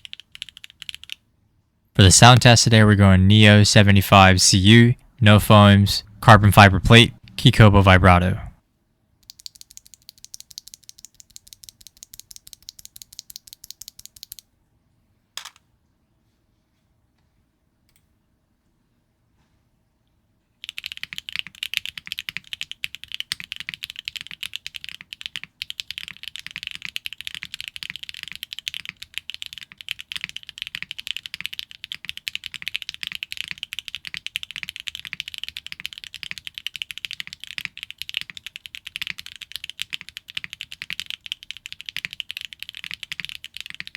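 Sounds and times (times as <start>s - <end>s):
mechanical keyboard typing: 0.0s - 1.2s, 9.2s - 14.4s, 20.6s - 43.9s.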